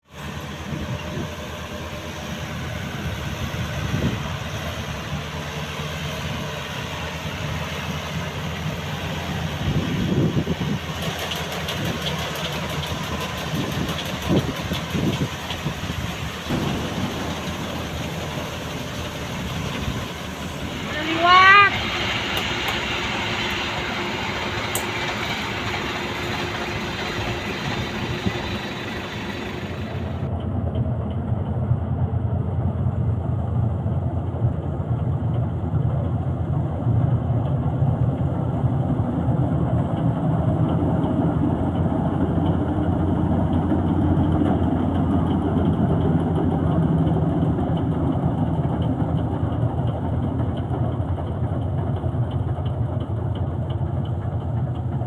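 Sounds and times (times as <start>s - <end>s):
combine harvester engine droning: 0.0s - 55.0s
high hiss: 15.3s - 30.3s.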